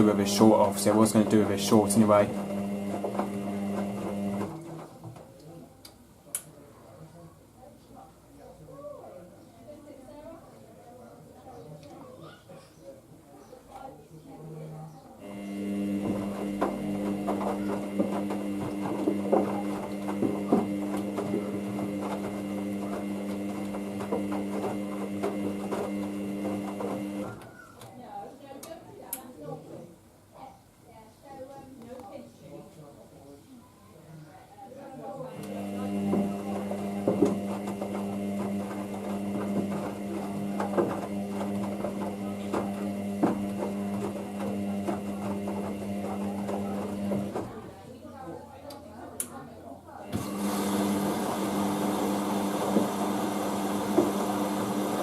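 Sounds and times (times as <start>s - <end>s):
washing machine motor humming: 0.0s - 4.8s, 15.2s - 27.4s, 35.3s - 47.6s, 50.0s - 55.0s
knocks of tumbling laundry: 0.0s - 5.2s, 15.3s - 27.4s, 35.6s - 47.6s.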